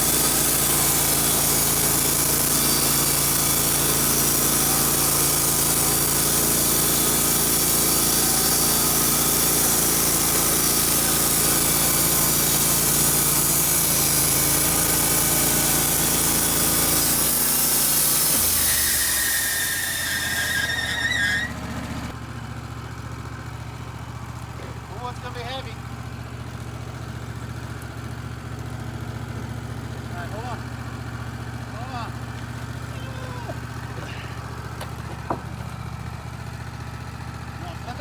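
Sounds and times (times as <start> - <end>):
band saw cutting log: 0.0 - 22.2, 31.4 - 38.0
engine running under load: 0.0 - 38.0
high squeal: 18.4 - 21.8.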